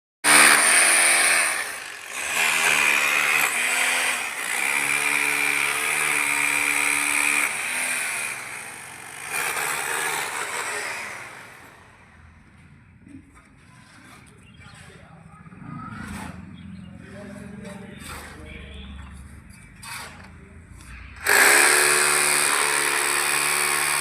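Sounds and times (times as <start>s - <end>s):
electric cutter cutting concrete: 0.2s - 11.9s, 21.2s - 24.0s.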